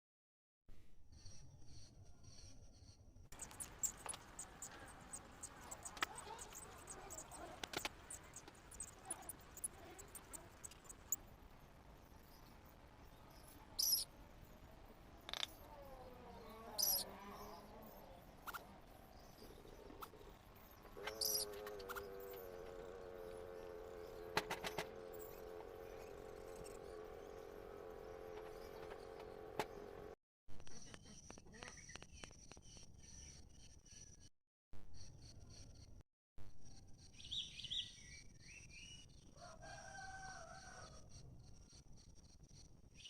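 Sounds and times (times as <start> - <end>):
sharp clicks: 3.4 - 11.2, 20.9 - 27.0
droning multi-tone hum: 16.2 - 30.2.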